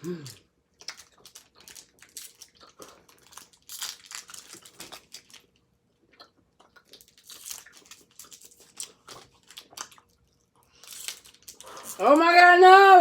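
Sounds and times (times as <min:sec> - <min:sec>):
candy being chewed: 0:00.0 - 0:12.2
candy wrappers crinkling: 0:00.2 - 0:05.7, 0:06.8 - 0:12.4.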